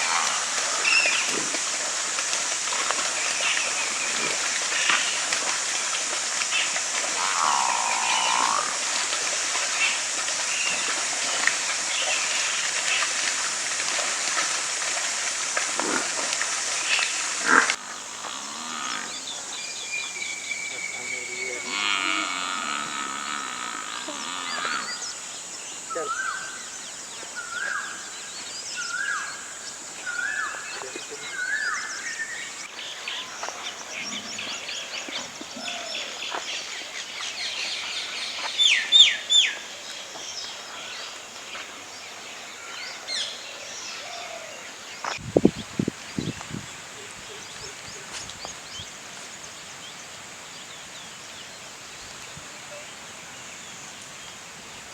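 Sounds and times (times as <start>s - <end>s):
rising animal calls: 7.0s - 9.0s.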